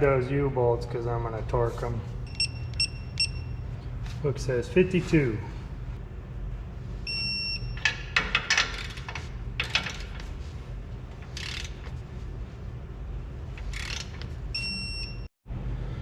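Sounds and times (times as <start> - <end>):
torque wrench clicking: 11.3 - 11.8, 13.6 - 14.3.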